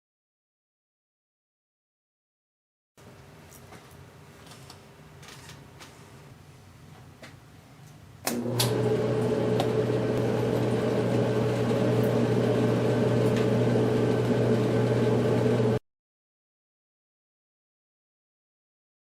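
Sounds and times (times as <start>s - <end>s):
click: 7.9s - 8.8s
clothes dryer humming: 8.2s - 15.8s.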